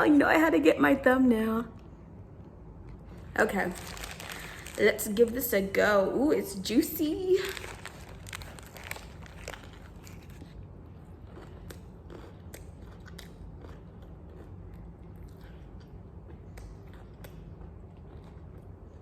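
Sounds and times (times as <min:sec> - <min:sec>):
low steady hum: 0:00.0 - 0:19.0
person chewing crunchy food: 0:02.8 - 0:04.8, 0:07.4 - 0:19.0.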